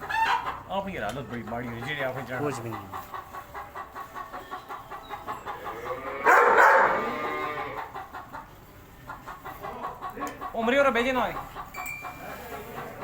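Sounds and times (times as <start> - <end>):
chicken drawn-out call: 0.0 - 0.6, 2.5 - 8.4
chickens clucking: 0.0 - 13.0.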